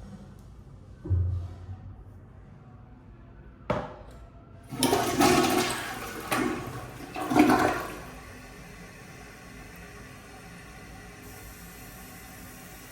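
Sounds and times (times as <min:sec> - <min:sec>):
toilet flushing: 0:04.7 - 0:12.9.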